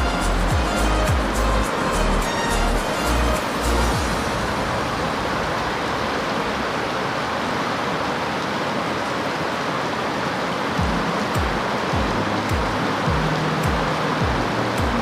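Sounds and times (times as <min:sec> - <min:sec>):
background music: 0:00.0 - 0:05.3, 0:10.8 - 0:15.0
heavy rain hissing: 0:00.0 - 0:15.0.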